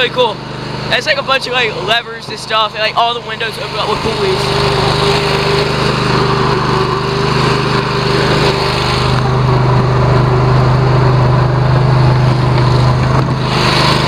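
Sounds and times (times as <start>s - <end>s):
lawnmower engine running: 0.0s - 14.0s.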